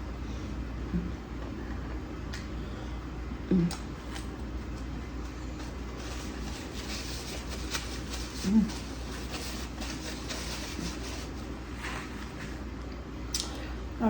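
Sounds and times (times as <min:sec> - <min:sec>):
steady low hum: 0:00.0 - 0:14.0
person humming mm: 0:00.9 - 0:01.2, 0:03.4 - 0:03.9.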